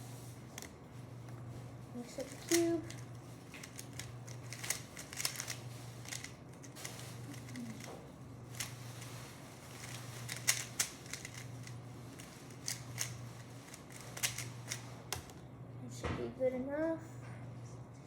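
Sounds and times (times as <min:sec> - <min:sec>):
steady low hum: 0:00.0 - 0:18.0
plastic puzzle cube clicking: 0:02.3 - 0:03.0, 0:03.6 - 0:06.3, 0:07.3 - 0:07.9, 0:09.8 - 0:11.5, 0:12.2 - 0:15.3.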